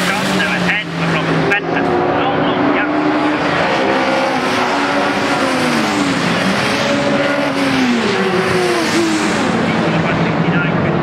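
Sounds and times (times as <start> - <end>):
racing cars passing: 0.0 - 11.0.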